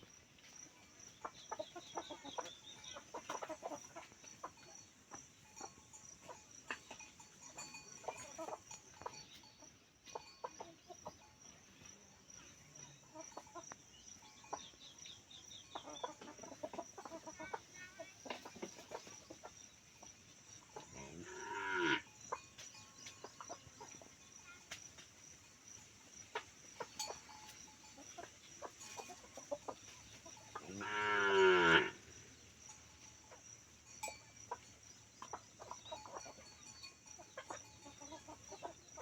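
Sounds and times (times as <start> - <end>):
chickens clucking: 0.0 - 39.0
drawn-out chicken call: 1.2 - 6.8, 15.6 - 19.6, 26.3 - 32.0.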